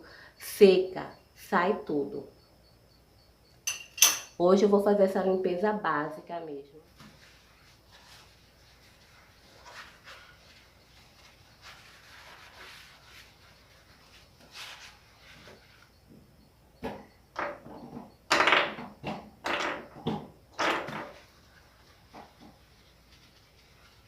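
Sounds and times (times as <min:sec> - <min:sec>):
scrubbing on a cooktop: 0:06.9 - 0:15.9, 0:21.1 - 0:24.0.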